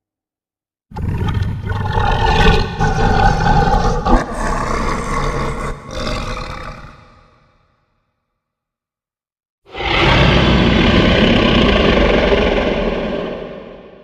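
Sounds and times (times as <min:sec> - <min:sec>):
creature roar: 0:01.0 - 0:07.4, 0:09.7 - 0:14.0.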